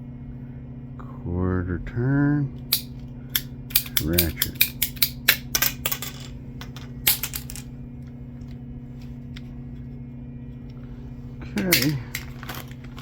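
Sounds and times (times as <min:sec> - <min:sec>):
low steady hum: 0:00.0 - 0:13.0
ratcheting crimp tool clicks: 0:02.7 - 0:05.4.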